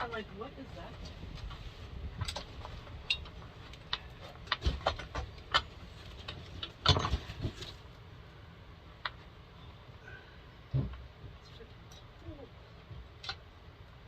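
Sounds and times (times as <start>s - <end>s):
clicks and knocks of tools: 2.2s - 7.2s.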